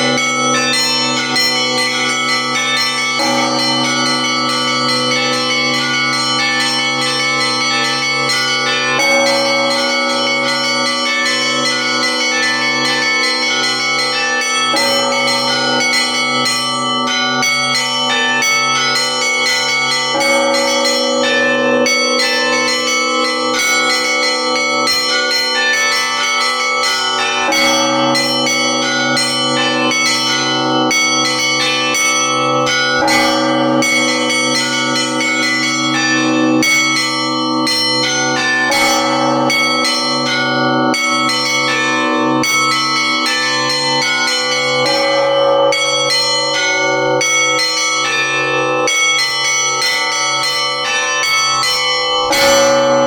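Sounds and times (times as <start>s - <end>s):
deep bell humming: 0.0s - 25.2s, 27.3s - 36.3s, 37.4s - 48.2s, 51.7s - 53.0s
middle bells striking: 0.0s - 53.0s.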